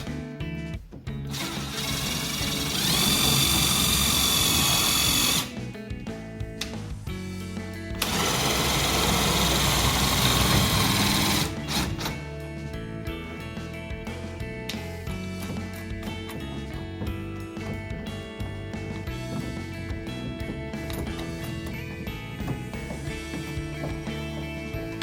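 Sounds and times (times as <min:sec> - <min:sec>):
background music: 0:00.0 - 0:25.0
power tool motor whining: 0:01.3 - 0:05.6, 0:08.0 - 0:12.2.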